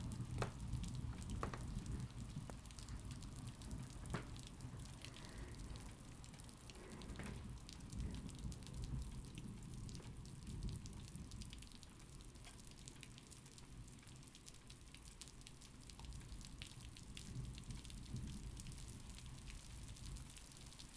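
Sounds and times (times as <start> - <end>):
distant thunder rumble: 0.0 - 11.3
steady rain: 0.0 - 20.9.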